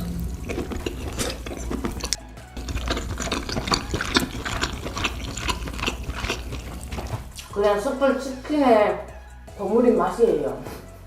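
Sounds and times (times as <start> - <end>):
wet chewing and mouth smacking: 0.0 - 7.5
background music: 0.0 - 11.0.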